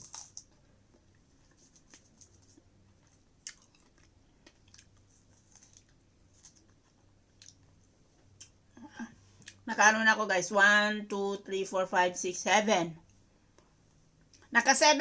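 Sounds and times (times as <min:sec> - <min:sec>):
chewing with wet mouth clicks: 0:03.4 - 0:07.8.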